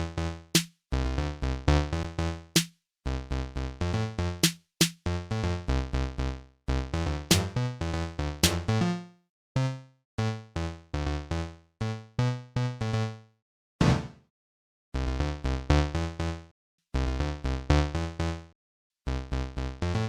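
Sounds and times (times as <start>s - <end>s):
synthesizer chords: 7.3s - 7.6s.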